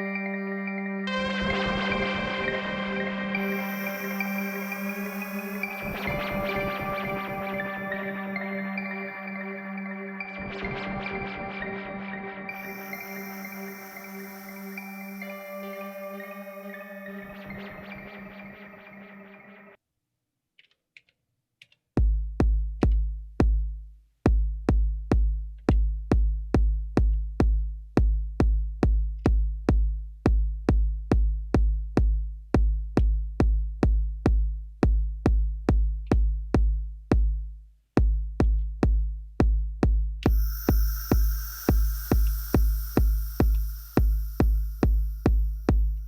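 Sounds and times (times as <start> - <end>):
hissing high layer with ringing tones: 3.4 - 8.6, 12.5 - 18.9, 40.3 - 46.0
deep kick drum pulse: 22.0 - 46.0.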